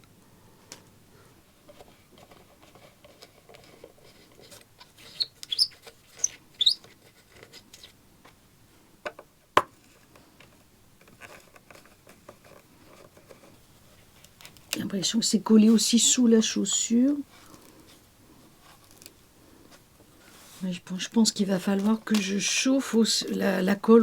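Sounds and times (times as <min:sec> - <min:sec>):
short high squeaks: 0:05.0 - 0:06.8
light clicks and rustles: 0:09.1 - 0:14.9, 0:17.1 - 0:22.6.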